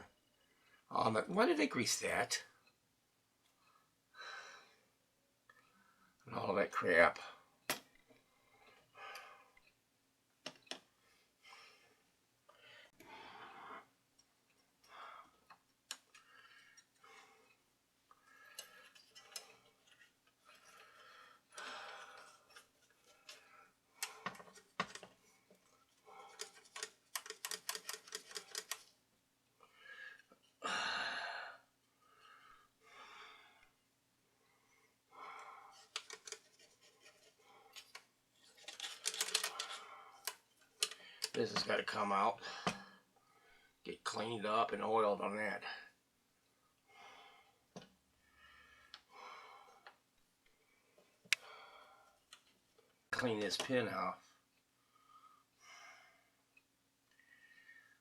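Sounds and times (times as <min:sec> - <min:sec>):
small metal clicks and taps: 0:35.8 - 0:41.7.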